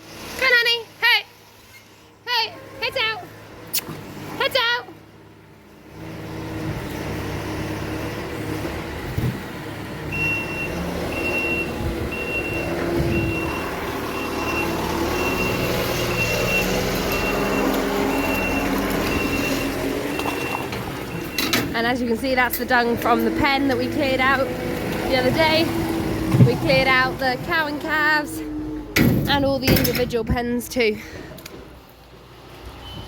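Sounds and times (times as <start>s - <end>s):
farm vehicle engine running: 3.3s - 32.9s
reversing alarm beeps: 10.1s - 21.6s.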